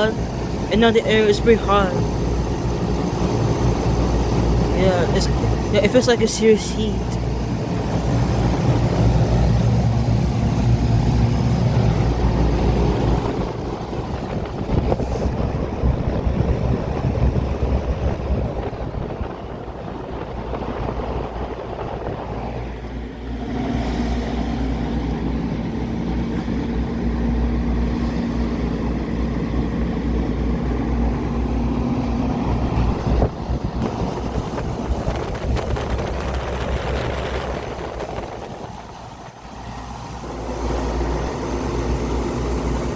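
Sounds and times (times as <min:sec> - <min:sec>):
compressor hum: 0:00.0 - 0:42.9
fan air rushing: 0:00.0 - 0:42.9
steady humming note: 0:00.0 - 0:42.9
wind on microphone: 0:07.2 - 0:23.2, 0:28.4 - 0:40.1.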